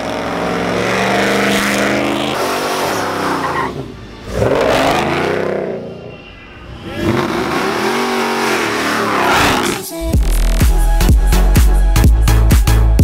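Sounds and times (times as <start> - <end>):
car engine revving hard: 0.0 - 3.6, 4.3 - 5.9, 6.8 - 9.9
tyres squealing in burnout: 1.0 - 9.9.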